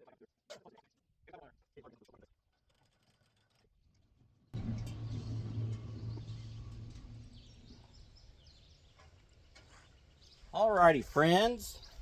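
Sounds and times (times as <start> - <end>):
sawmill motor humming: 4.6 - 8.7
birds chirping: 4.6 - 12.0.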